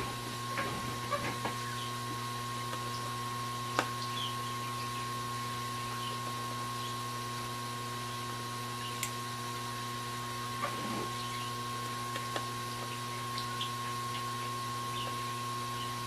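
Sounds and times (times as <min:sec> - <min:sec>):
electrical hum: 0:00.0 - 0:16.0.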